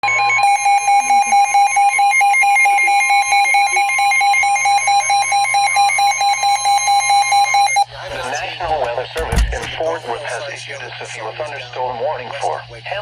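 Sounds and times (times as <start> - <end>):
two-tone emergency alert alarm: 0.0 - 9.7.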